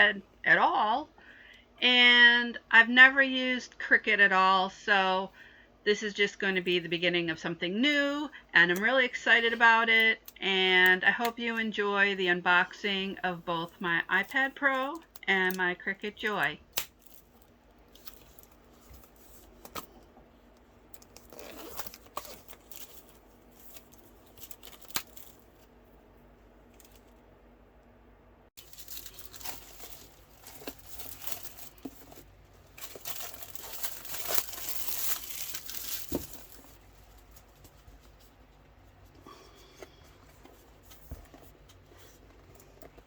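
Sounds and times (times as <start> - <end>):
packaging tearing and crinkling: 16.7 - 18.6, 21.0 - 25.7, 28.6 - 36.8.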